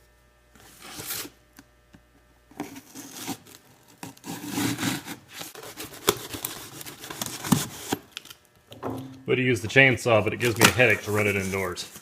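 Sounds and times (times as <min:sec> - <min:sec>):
sharp knocks: 0:08.7 - 0:09.3.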